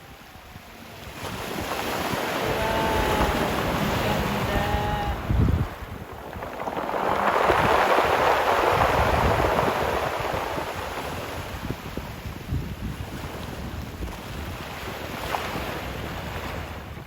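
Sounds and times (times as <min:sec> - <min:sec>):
sea wave washing: 0:00.0 - 0:12.3
wind rumbling on microphone: 0:00.0 - 0:17.0.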